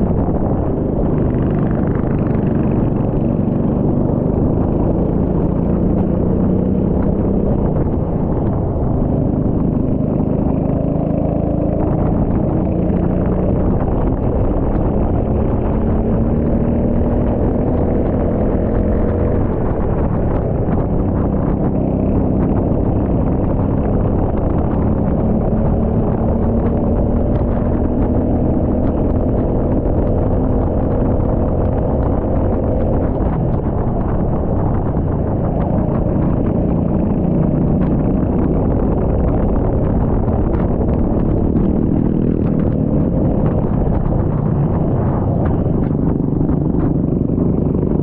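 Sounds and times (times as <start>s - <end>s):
go-kart engine running: 0.0s - 48.0s.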